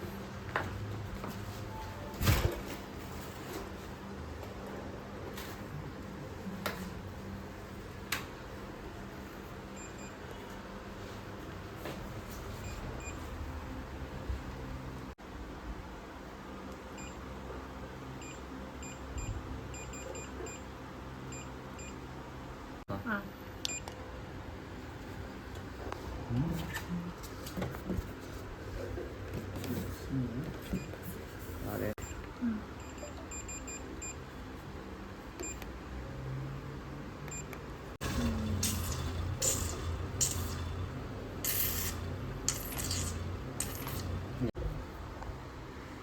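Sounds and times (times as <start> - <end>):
machine humming: 38.0 - 44.6
short hissing bursts: 41.4 - 42.0.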